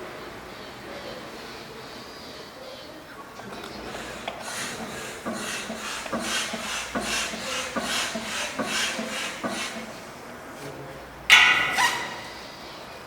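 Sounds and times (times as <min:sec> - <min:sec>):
rhythmic scraping strokes: 0:03.8 - 0:10.2, 0:11.3 - 0:12.6.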